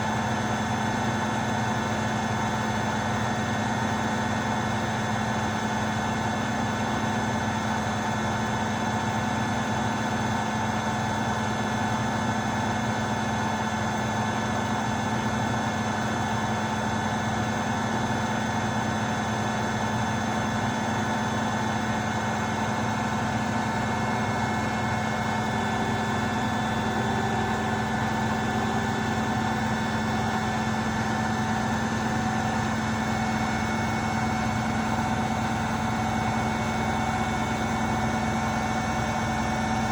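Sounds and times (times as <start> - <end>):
washing machine spinning: 22.4 - 39.9.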